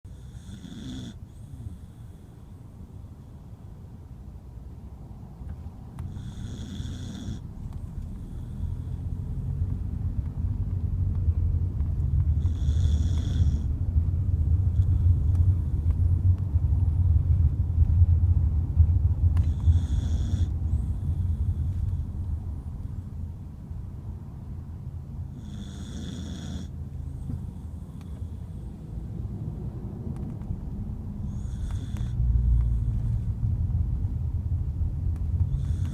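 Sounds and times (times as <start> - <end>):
dog snoring: 0.1 - 3.3, 6.0 - 9.7, 12.3 - 13.8, 14.6 - 16.0, 19.4 - 23.0, 25.3 - 29.0, 31.2 - 33.3, 35.5 - 35.9.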